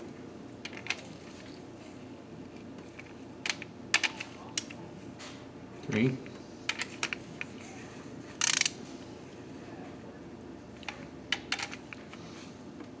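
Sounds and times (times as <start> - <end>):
torque wrench ratcheting clicks: 8.4 - 8.8.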